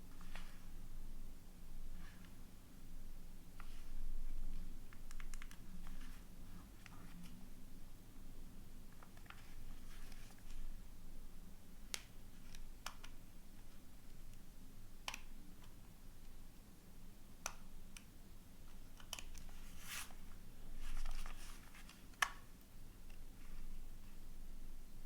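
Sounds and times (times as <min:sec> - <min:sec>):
phone and packaging clicks and rustles: 0:20.8 - 0:22.4.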